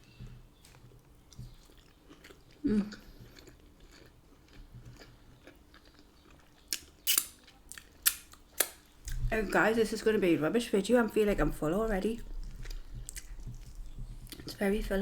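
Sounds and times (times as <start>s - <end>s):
chewing food: 0.0s - 10.4s, 11.2s - 15.0s
wet mouth clicks: 6.7s - 9.2s.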